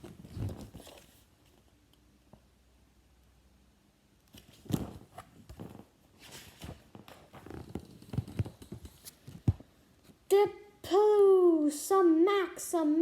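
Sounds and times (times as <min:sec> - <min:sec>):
book pages rustling: 0:00.0 - 0:01.7, 0:04.3 - 0:10.2.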